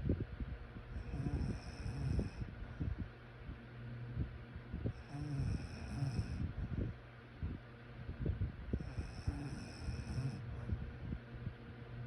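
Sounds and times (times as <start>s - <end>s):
person snoring: 1.0s - 2.4s, 5.0s - 6.4s, 8.8s - 10.7s.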